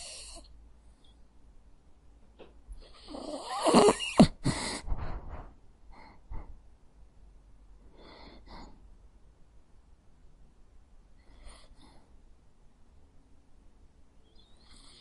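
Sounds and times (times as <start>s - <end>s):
dog snoring and snorting: 0.0s - 0.4s, 2.9s - 4.5s, 14.6s - 15.0s.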